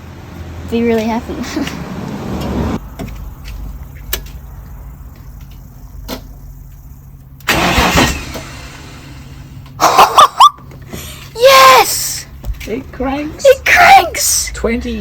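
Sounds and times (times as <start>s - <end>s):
car engine cranking on starter: 1.5s - 9.8s
excited shouting: 11.4s - 12.3s, 13.4s - 14.6s.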